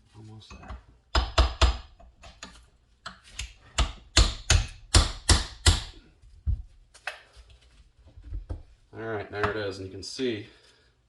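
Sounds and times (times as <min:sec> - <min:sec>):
hammer striking chisel: 0:01.1 - 0:02.4, 0:03.1 - 0:06.0.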